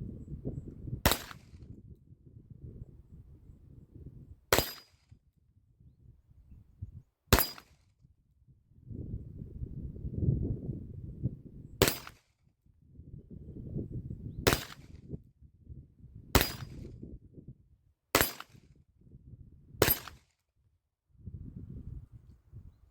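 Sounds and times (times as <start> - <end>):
pistol shots: 1.1 - 1.5, 7.4 - 7.7, 14.5 - 14.9, 16.4 - 16.7, 18.2 - 18.5.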